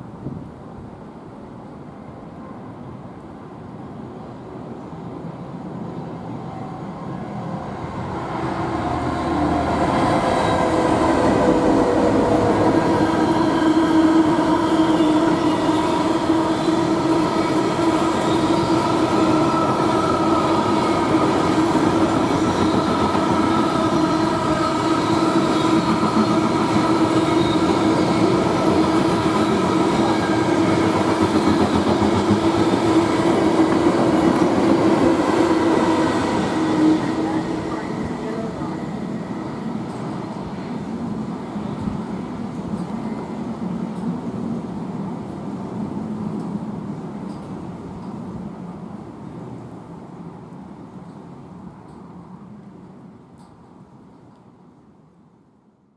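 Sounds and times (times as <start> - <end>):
train passing: 0.0 - 54.0
rail noise: 0.0 - 55.9.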